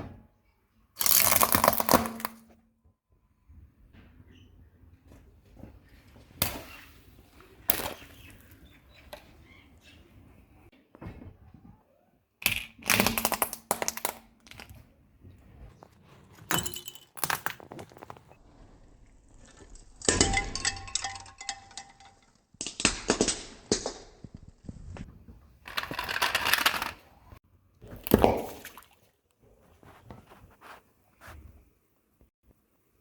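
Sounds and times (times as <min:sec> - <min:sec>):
objects crunching under car tyre: 0:15.5 - 0:18.4.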